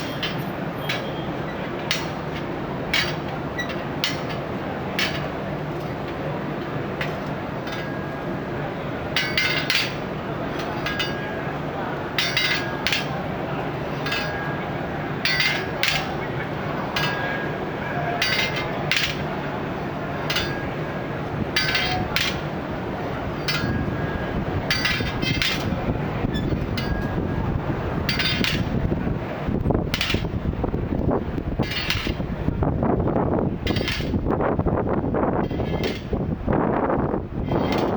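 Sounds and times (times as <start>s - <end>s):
steel bars struck clinking: 0.0s - 8.2s, 9.1s - 19.4s, 20.1s - 27.4s, 28.1s - 28.8s, 29.9s - 30.3s, 31.6s - 32.2s, 33.6s - 34.2s, 35.4s - 36.2s, 37.5s - 37.9s
street noise rumble: 0.0s - 37.9s.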